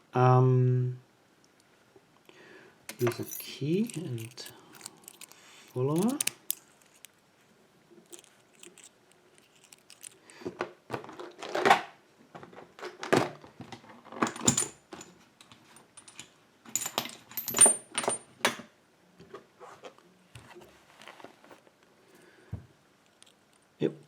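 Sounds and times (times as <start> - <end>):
small metal parts ringing: 2.9 - 7.1, 16.0 - 18.2
metallic clicks and scrapes: 2.9 - 7.2, 8.0 - 10.4.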